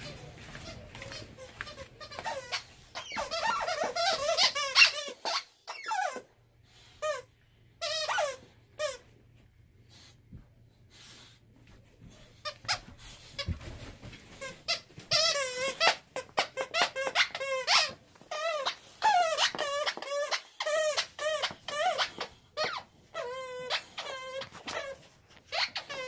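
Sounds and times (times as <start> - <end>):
squeaky toy squeaks: 1.4 - 6.3, 7.0 - 9.0, 14.4 - 26.0.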